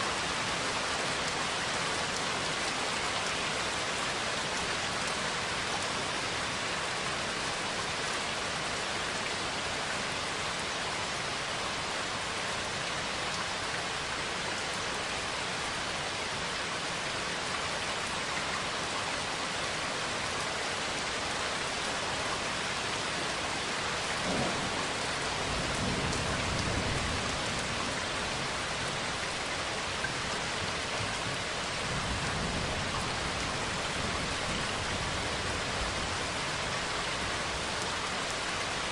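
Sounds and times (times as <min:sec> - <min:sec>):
heavy rain hissing: 0:22.0 - 0:38.9
low rumble of thunder: 0:24.2 - 0:28.5.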